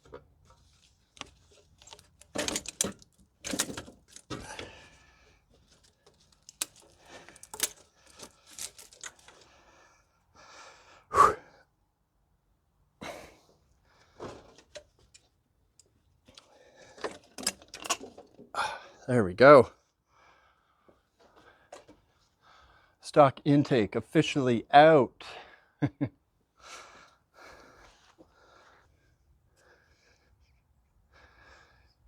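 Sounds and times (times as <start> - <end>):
metal parts knocking and rattling: 1.2 - 4.9, 5.7 - 9.4, 17.0 - 18.4.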